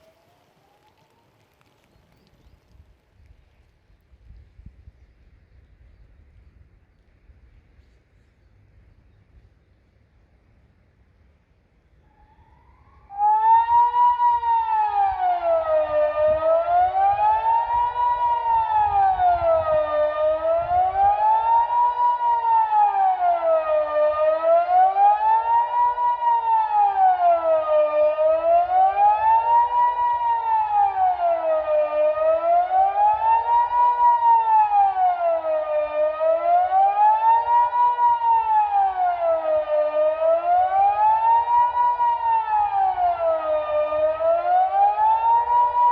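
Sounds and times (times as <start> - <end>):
electronic siren sweeping up and down: 12.1 - 45.9.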